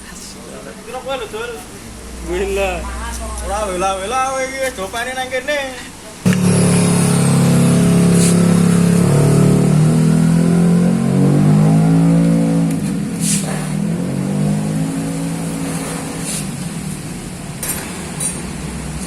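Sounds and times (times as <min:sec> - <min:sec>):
scooter engine revving: 0:06.2 - 0:17.4.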